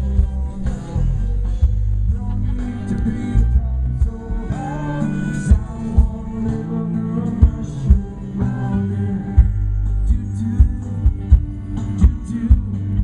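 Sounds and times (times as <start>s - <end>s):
sharp low thumps: 0.0s - 4.4s
guitar: 0.0s - 13.0s
live band playing: 0.0s - 13.0s
person singing: 0.0s - 13.0s.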